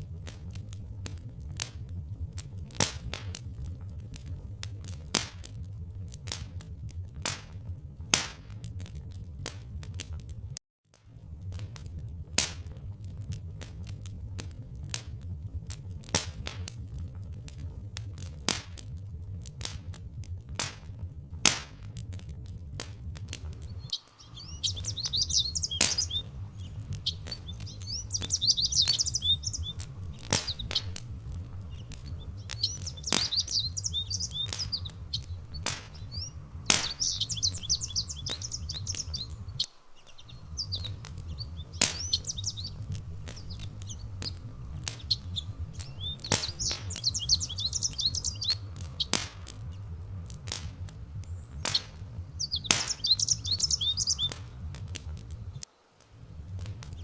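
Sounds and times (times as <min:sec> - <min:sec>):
wood fire crackling and popping: 0:22.8 - 0:57.0
songbird twittering: 0:23.4 - 0:50.4, 0:51.0 - 0:55.7
steady low rumble: 0:23.4 - 0:55.6.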